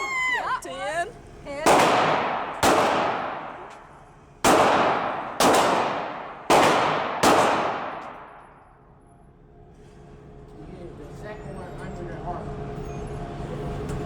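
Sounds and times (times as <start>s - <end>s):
pistol shots echoing: 1.6s - 8.6s.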